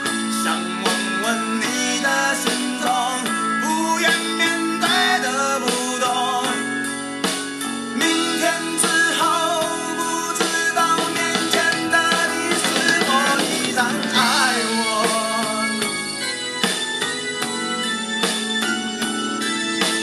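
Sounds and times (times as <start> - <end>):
person singing with guitar: 0.0 - 6.8, 8.0 - 16.3.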